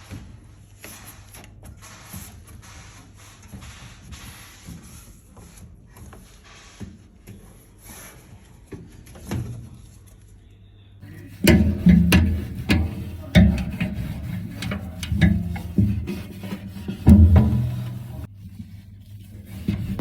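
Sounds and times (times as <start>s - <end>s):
knocks and clicks: 11.1s - 18.3s
rubbing strokes: 11.1s - 20.0s.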